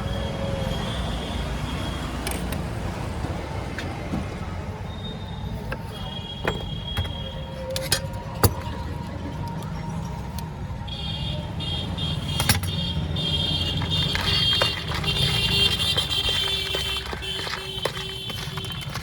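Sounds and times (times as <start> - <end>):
traffic rumble: 0.0 - 19.0.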